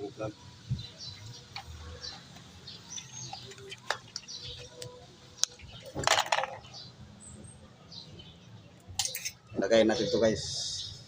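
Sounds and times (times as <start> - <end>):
birds chirping: 0.0 - 11.0
tools clicking and clattering: 5.8 - 6.7, 9.0 - 9.4.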